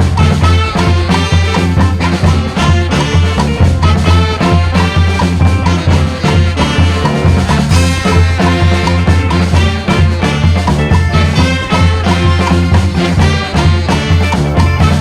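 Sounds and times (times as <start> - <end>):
brass band playing swing tune: 0.0 - 15.0.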